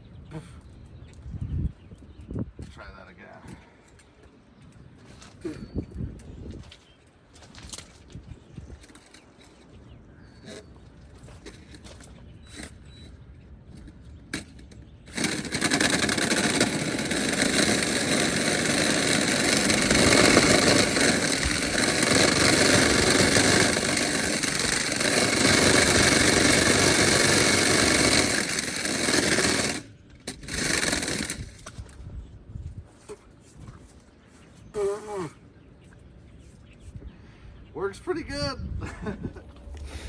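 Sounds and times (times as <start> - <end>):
wire rattling and scraping in duct: 13.7 - 32.1
power drill running: 15.1 - 31.7.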